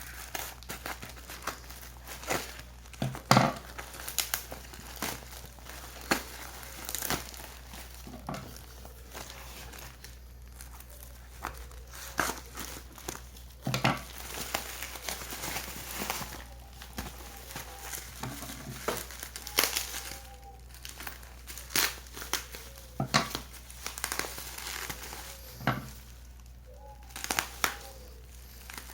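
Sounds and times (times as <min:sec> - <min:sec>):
packaging rustling and crackling: 0:00.0 - 0:28.9
packaging tearing: 0:00.0 - 0:28.9.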